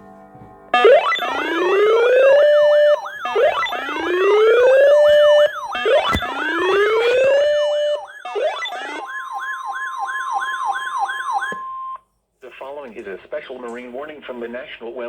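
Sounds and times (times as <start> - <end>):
siren fast yelp: 0.8 - 12.0
siren rising wails: 0.8 - 12.0.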